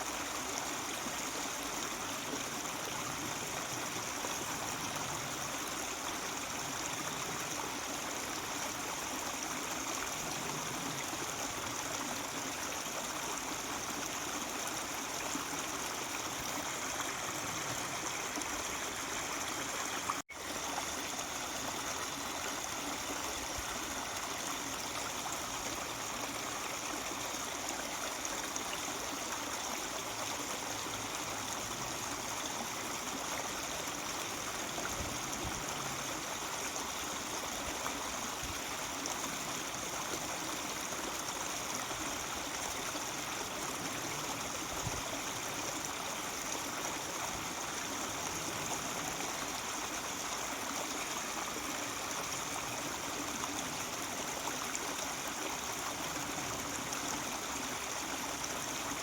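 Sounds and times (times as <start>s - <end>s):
stream babbling over rocks: 0.0s - 59.0s.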